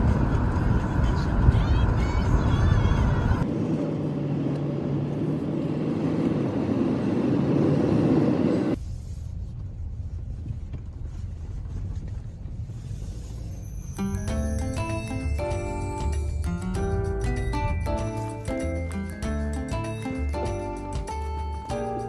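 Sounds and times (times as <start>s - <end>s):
car road noise: 0.0s - 8.8s.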